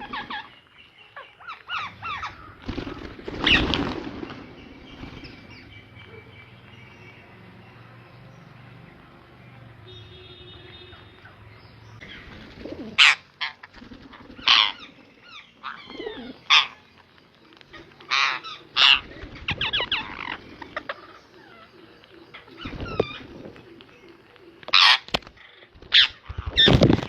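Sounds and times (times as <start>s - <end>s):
parrot screeching: 14.4s - 14.8s
parrot chattering calls: 14.4s - 16.8s.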